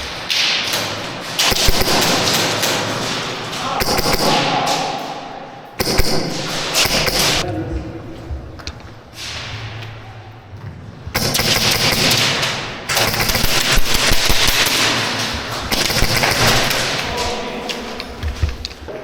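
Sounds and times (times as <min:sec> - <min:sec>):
airsoft gun full-auto bursts: 0:01.4 - 0:02.6, 0:03.8 - 0:04.4, 0:05.8 - 0:07.4, 0:11.2 - 0:15.0, 0:15.7 - 0:17.0.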